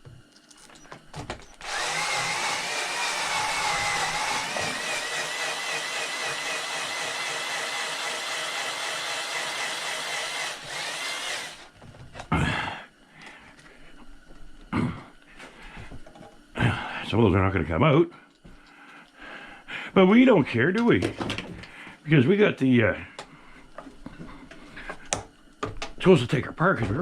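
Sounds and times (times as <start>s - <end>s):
power drill whining: 0.7s - 11.7s.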